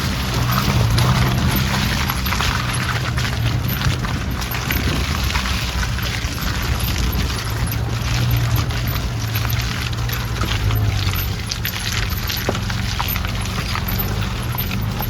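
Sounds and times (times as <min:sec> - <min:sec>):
crackling over rough ground: 0:00.0 - 0:15.0
vehicle engine running: 0:00.0 - 0:15.0.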